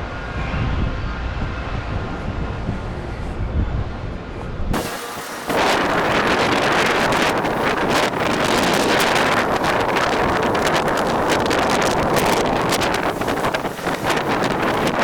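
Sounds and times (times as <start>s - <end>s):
blizzard wind on microphone: 0.0s - 15.0s.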